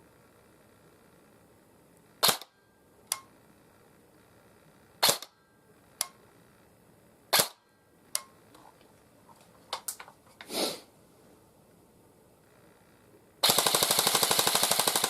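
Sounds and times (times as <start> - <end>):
airsoft gun shots cracking: 2.2 - 2.6, 5.0 - 5.4, 7.3 - 7.7
light mechanical click: 3.1 - 3.3
airsoft gun burst: 13.4 - 15.0.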